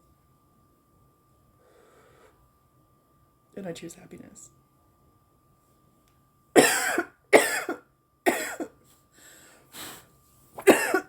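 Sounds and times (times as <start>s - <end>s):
quiet breaths: 1.5s - 2.8s, 8.8s - 10.6s
woman coughing: 6.6s - 8.7s, 10.6s - 11.0s.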